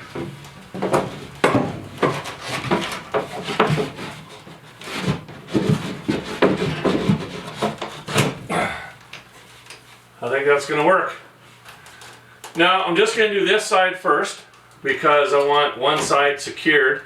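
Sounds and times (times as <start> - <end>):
wood scraping and knocking: 0.0 - 8.4.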